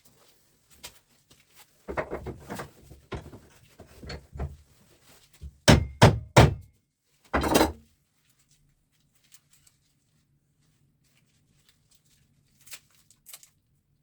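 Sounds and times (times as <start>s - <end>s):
hammer knocking on steel: 1.9s - 4.6s, 5.4s - 6.6s.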